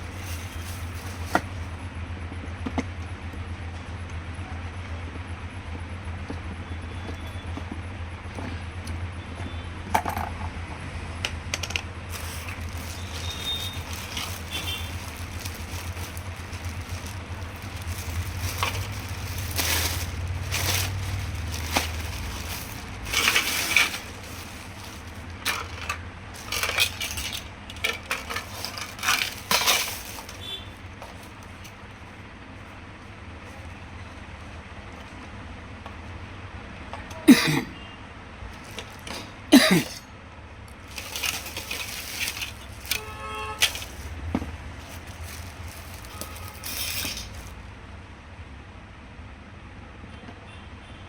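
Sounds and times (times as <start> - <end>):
low steady hum: 12.1 - 36.3.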